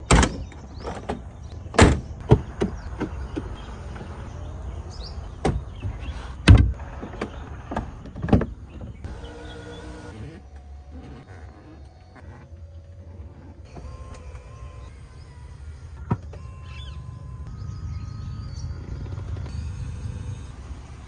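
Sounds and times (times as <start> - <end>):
car doors and latches shutting: 0.0 - 3.7.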